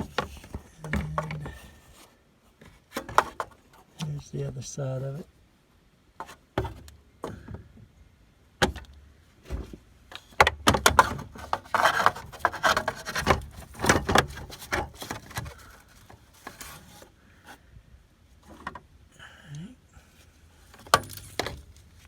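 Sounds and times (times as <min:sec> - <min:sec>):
hands and tools clicking and knocking: 0:00.0 - 0:01.7.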